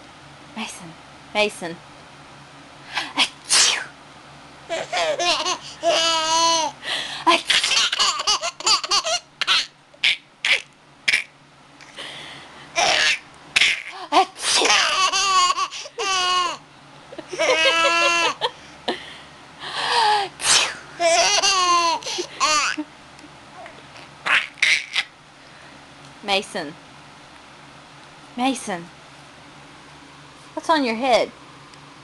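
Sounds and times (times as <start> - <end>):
baby laughing: 4.7 - 11.4, 12.8 - 16.6, 17.2 - 18.5, 21.0 - 22.9, 23.6 - 25.1.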